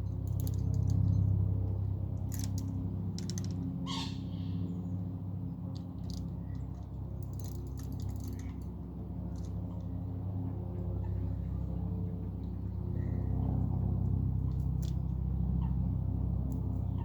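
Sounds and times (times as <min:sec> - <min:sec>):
steady low hum: 0:00.0 - 0:17.0
fishing tackle clicking and rattling: 0:00.2 - 0:01.2, 0:02.2 - 0:03.7, 0:05.7 - 0:08.7, 0:09.3 - 0:09.6, 0:14.6 - 0:15.0
bird squawk: 0:03.8 - 0:04.6.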